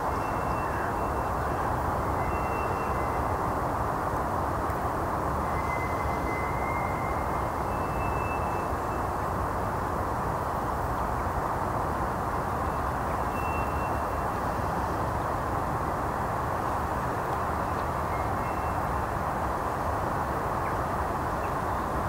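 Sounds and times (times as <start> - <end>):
faint high whistles: 5.5 - 8.7.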